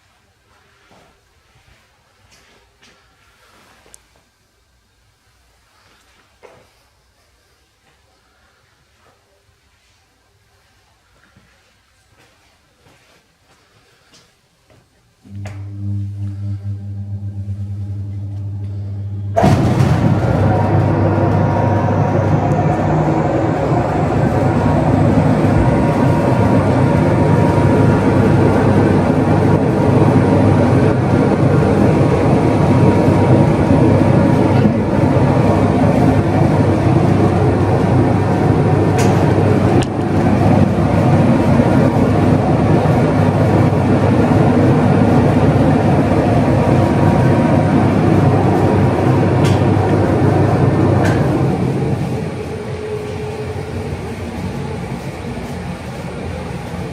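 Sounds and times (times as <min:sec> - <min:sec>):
carpet-beating machine racket: 0:15.3 - 0:32.7.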